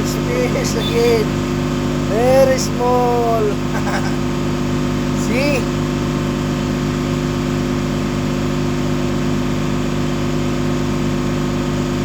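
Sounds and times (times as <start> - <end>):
ship engine humming: 0.0 - 6.4.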